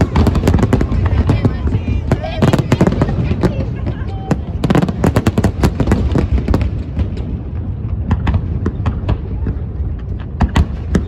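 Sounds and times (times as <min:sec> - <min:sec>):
fireworks cracks and bangs: 0:00.0 - 0:11.0.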